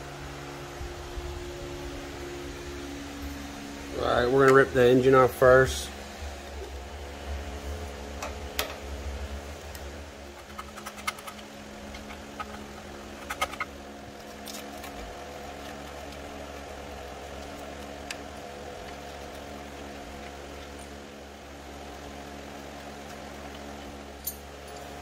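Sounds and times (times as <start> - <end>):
steady background hum: 0.0 - 25.0.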